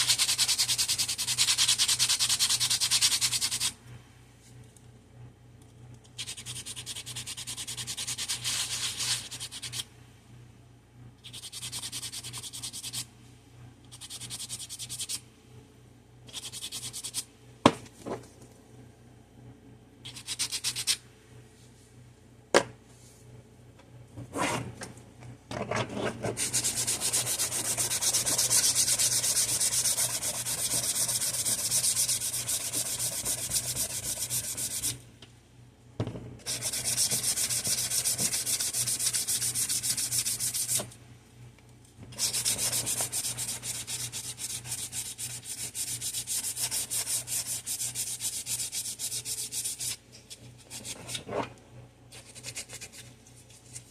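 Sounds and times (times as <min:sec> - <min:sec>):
sandpaper sanding: 0:00.0 - 0:03.7, 0:06.2 - 0:09.8, 0:26.4 - 0:35.0, 0:36.5 - 0:40.9, 0:42.2 - 0:50.0.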